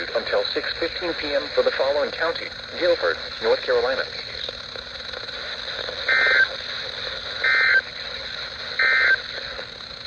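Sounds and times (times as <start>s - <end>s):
steady hiss: 0.0s - 10.0s
digital data tone bursts: 6.0s - 6.6s, 7.4s - 8.0s, 8.7s - 9.4s.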